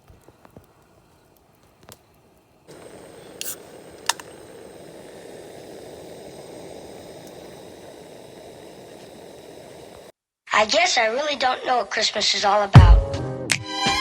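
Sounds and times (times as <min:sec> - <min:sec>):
campfire burning: 0:00.0 - 0:10.1
fire crackles: 0:00.0 - 0:10.1.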